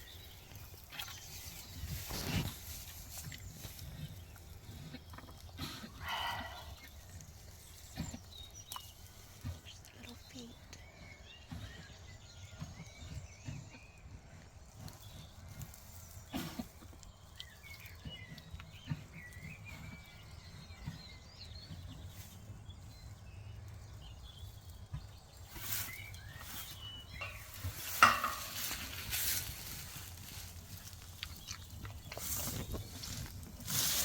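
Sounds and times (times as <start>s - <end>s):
crackly rustling and handling: 0.1s - 5.6s, 23.8s - 34.0s.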